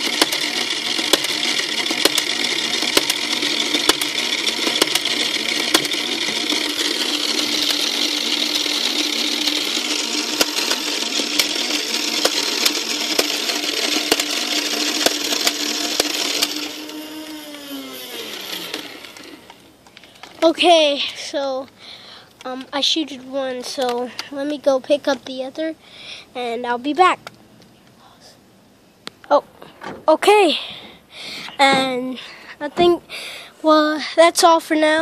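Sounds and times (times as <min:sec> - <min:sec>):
toy blaster motor clicking: 0:00.0 - 0:20.8.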